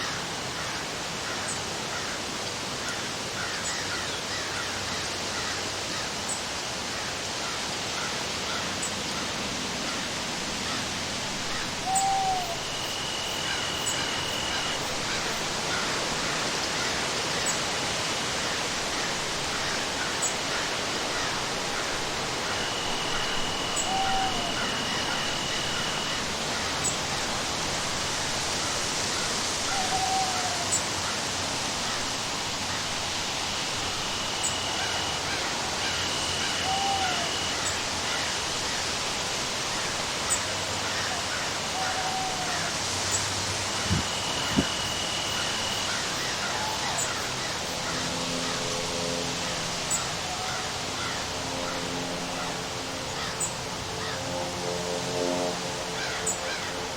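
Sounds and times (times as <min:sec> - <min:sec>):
thin high tone: 0:10.6 - 0:15.7, 0:21.2 - 0:28.0, 0:31.7 - 0:38.8, 0:41.8 - 0:47.6
short falling bird call: 0:11.5 - 0:15.9
rain hissing: 0:30.6 - 0:36.7.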